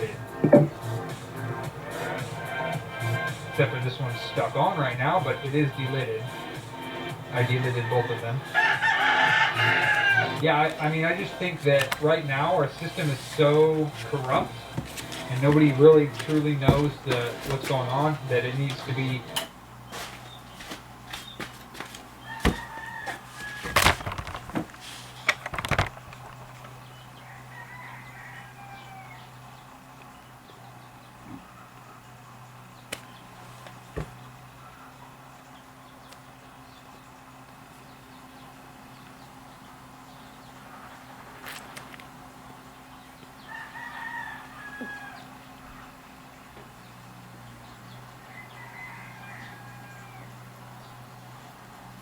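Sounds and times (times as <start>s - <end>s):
rooster crowing: 0.0s - 19.3s, 22.2s - 24.4s, 26.8s - 29.8s, 43.2s - 46.0s, 47.4s - 51.0s
low steady hum: 0.0s - 52.0s
rooster crowing faintly: 7.4s - 11.8s, 22.2s - 24.3s, 27.2s - 29.5s, 43.4s - 46.0s, 48.2s - 50.5s.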